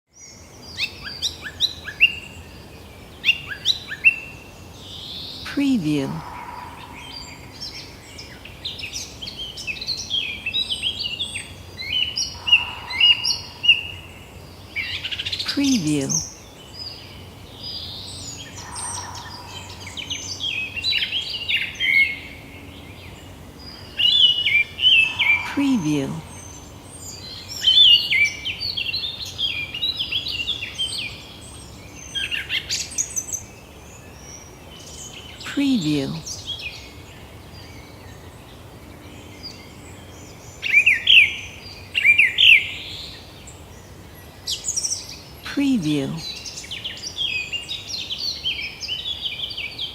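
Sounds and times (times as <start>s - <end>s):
faint low background hum: 0.2s - 49.9s
birds chirping and whistling: 11.8s - 15.4s, 18.0s - 22.8s, 23.6s - 25.6s.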